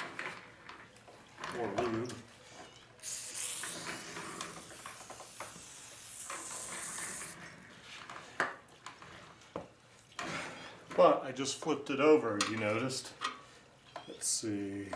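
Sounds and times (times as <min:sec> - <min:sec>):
aerosol can spraying: 0:03.0 - 0:07.4.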